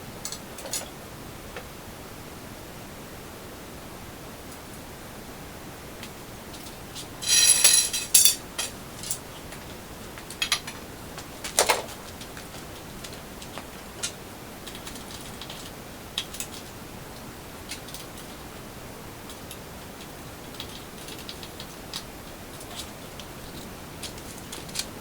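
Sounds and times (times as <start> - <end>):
jangling rattle: 7.2 - 8.4
metal tools clinking: 7.2 - 9.2.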